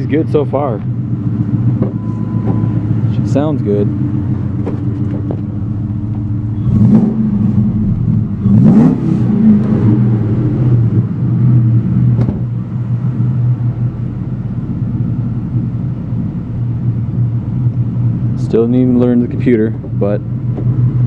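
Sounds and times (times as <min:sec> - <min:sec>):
car engine idling and revving: 0:00.0 - 0:21.0.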